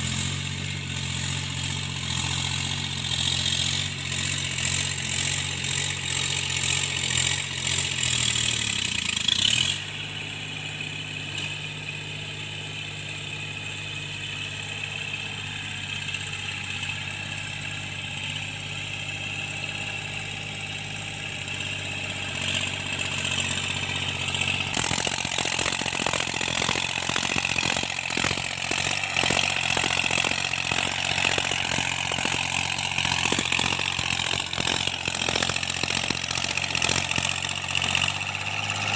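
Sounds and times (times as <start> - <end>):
tractor engine running: 0.0 - 38.9
rapid clattering: 23.4 - 38.9.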